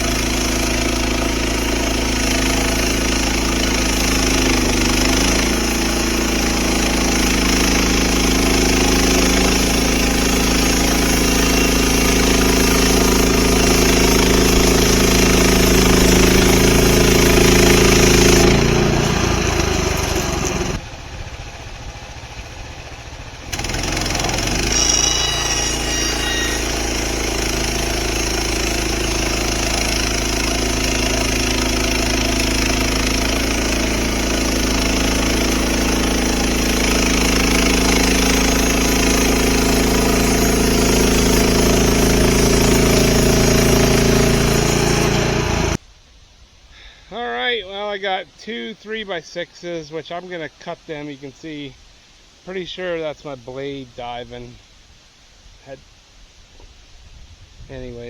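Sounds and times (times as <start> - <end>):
sawmill gasoline engine running: 0.0 - 45.8.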